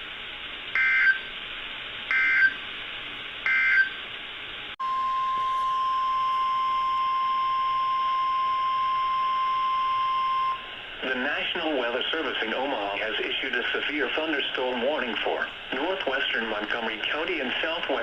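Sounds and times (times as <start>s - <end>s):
radio static: 11.0s - 18.0s.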